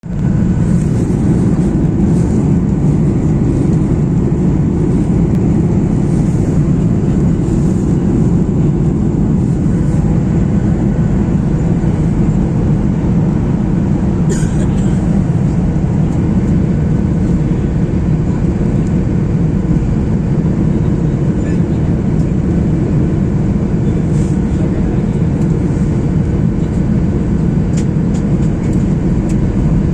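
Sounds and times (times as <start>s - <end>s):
airflow past fuselage: 0.0s - 20.6s
jet engine rumble in cabin: 0.0s - 29.9s.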